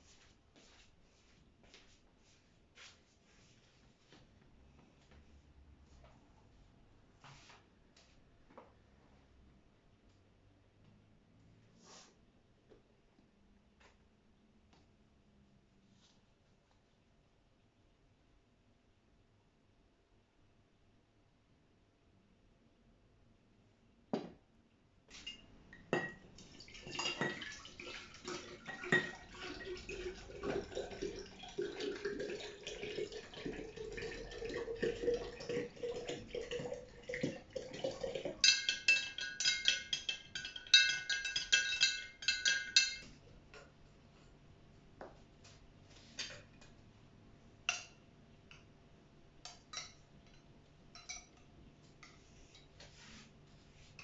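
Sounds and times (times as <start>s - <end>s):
water poured into glass jar: 26.0s - 43.0s
spoon clinking against glass: 38.4s - 43.1s, 49.7s - 51.4s.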